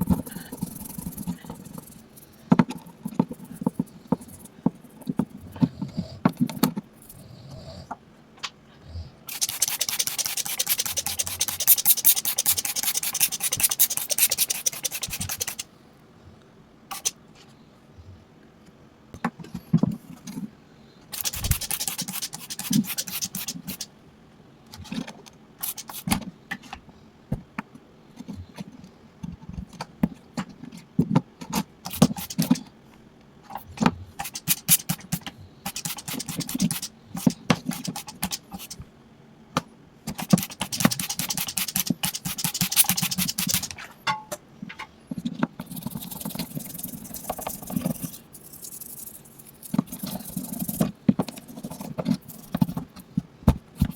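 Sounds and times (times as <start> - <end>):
scrubbing a small hard object: 0.0 - 5.4, 9.3 - 15.7, 21.2 - 23.9, 31.9 - 32.6, 34.2 - 38.8, 40.1 - 43.8, 45.2 - 53.0.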